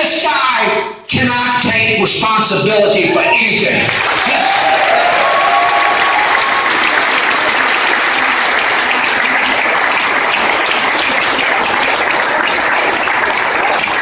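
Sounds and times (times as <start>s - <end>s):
audience applauding: 3.7s - 14.0s.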